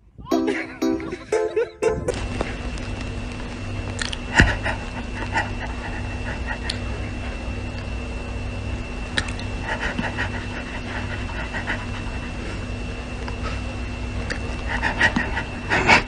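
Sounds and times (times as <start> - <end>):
dog panting: 9.6 - 12.4.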